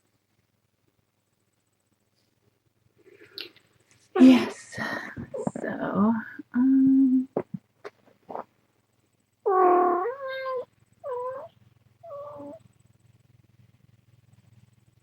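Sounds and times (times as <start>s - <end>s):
cat meowing: 9.5s - 12.6s.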